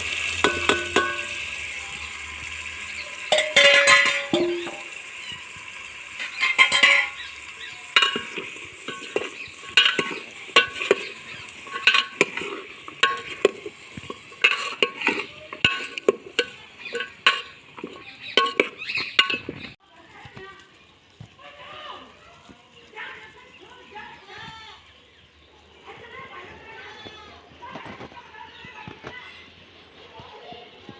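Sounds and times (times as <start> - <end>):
spatula scraping a pan: 0.0 - 1.6, 2.9 - 19.8
vegetables sizzling: 0.0 - 26.8.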